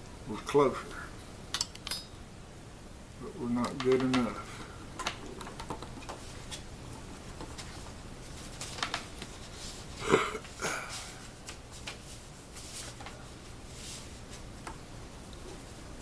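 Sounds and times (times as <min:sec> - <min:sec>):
wooden parts clicking and tapping: 0:03.6 - 0:04.4.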